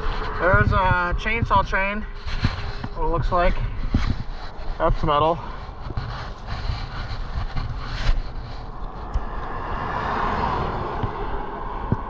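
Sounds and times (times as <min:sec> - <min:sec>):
wind on microphone: 0:00.0 - 0:12.0
vehicle passing: 0:08.0 - 0:12.0.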